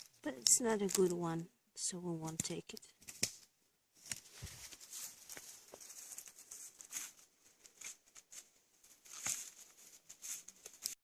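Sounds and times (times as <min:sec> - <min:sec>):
rustling leaf litter and twigs: 0:04.0 - 0:11.0.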